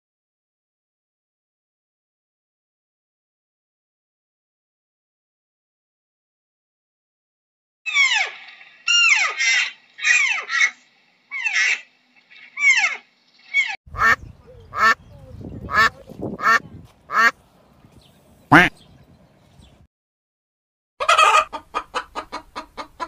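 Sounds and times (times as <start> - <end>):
bird calling: 7.9 - 17.4, 18.0 - 19.8.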